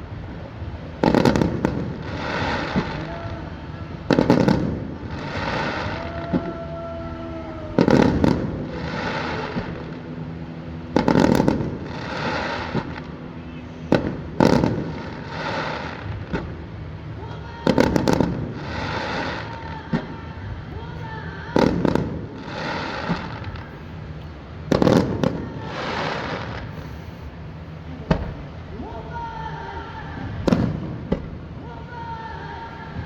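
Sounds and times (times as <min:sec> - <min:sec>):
firework hiss: 0:00.0 - 0:20.6, 0:21.5 - 0:28.7.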